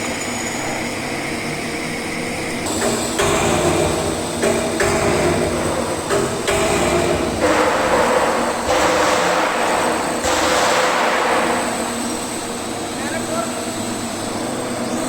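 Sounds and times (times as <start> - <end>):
welding arc buzzing: 2.6 - 12.8.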